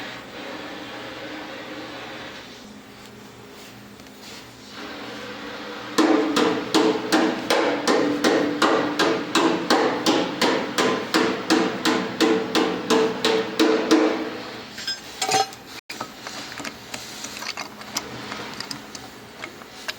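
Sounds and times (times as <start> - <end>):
hammer striking metal: 6.0 - 15.6.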